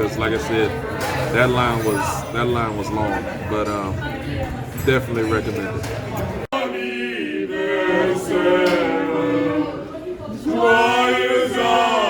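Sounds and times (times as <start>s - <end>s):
voices singing in harmony: 6.5s - 12.0s.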